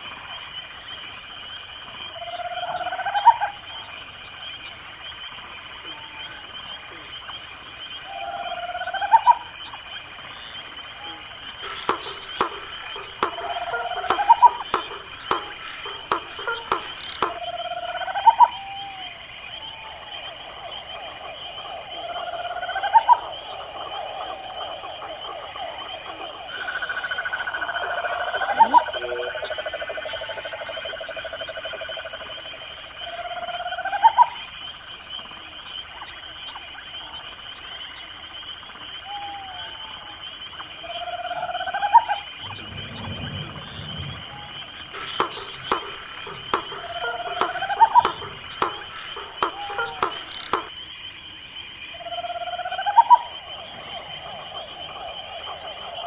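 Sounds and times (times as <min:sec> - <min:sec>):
crickets trilling: 0:00.0 - 0:56.0
frogs pulsed trill: 0:00.0 - 0:56.0
faint ticking: 0:11.0 - 0:17.7, 0:42.4 - 0:50.8
short rising calls: 0:42.4 - 0:50.7.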